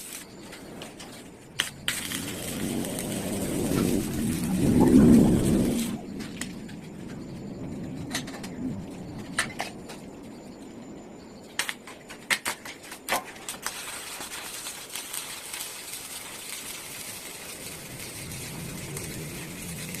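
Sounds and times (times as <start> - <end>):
steady hiss: 13.5 - 20.0.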